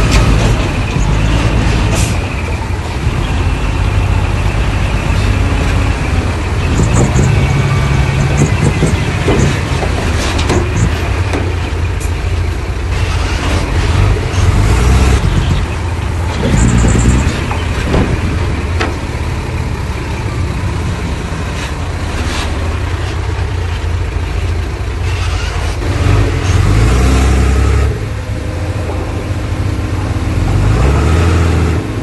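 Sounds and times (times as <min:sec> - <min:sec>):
diesel machinery engine rumble: 0:00.0 - 0:32.0
knocks: 0:08.2 - 0:11.6.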